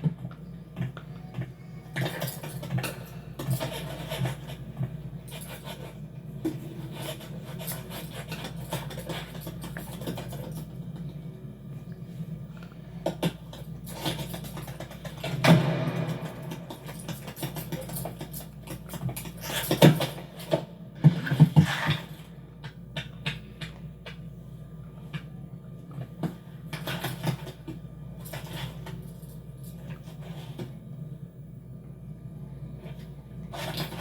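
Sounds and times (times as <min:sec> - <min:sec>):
steady low hum: 0:00.0 - 0:34.0
knocks thuds and clatters: 0:15.1 - 0:18.4.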